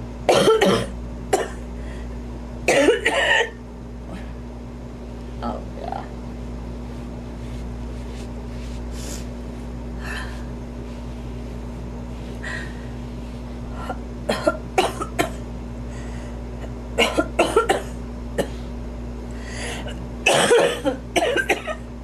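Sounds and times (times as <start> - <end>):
woman coughing: 0.3 - 1.6, 2.7 - 3.6, 13.8 - 15.4, 17.0 - 18.6, 20.2 - 21.8
faint breaths: 8.5 - 14.0, 15.9 - 16.4.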